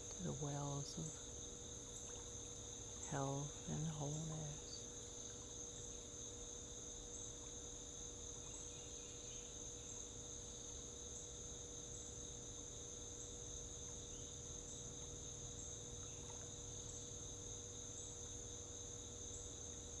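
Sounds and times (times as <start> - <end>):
faint low rumble: 0.0 - 1.4, 2.9 - 4.9
crickets chirring: 0.0 - 20.0.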